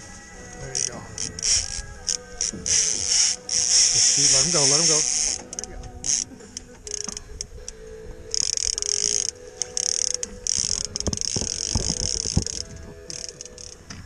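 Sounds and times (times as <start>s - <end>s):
fishing reel drag buzzing: 0.1s - 13.9s
dull knocks: 10.9s - 12.9s.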